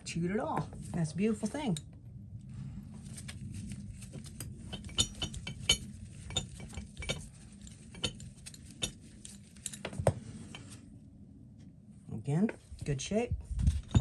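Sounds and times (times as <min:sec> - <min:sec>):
low steady hum: 0:00.0 - 0:14.0
small screws clinking: 0:04.2 - 0:09.9.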